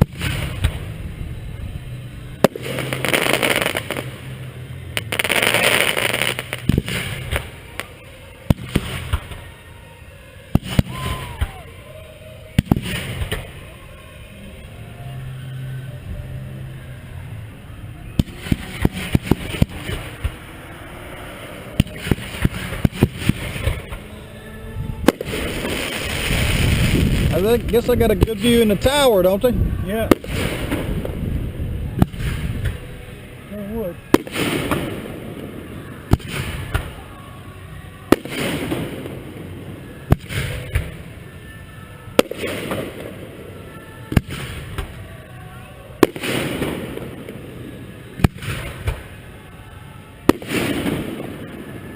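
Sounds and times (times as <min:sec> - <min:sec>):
fireworks bangs with crackling: 0:00.0 - 0:01.4, 0:02.3 - 0:09.6, 0:10.5 - 0:11.7, 0:12.5 - 0:13.7, 0:18.1 - 0:20.5, 0:21.7 - 0:24.1, 0:24.9 - 0:37.1, 0:38.0 - 0:45.2, 0:46.0 - 0:49.3, 0:50.2 - 0:51.9
crackling hiss: 0:00.0 - 0:14.0.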